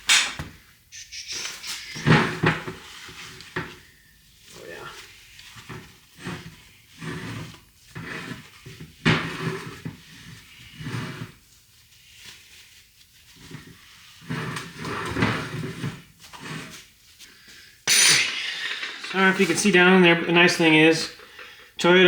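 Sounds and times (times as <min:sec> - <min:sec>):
sharp knock: 0:17.9 - 0:21.6.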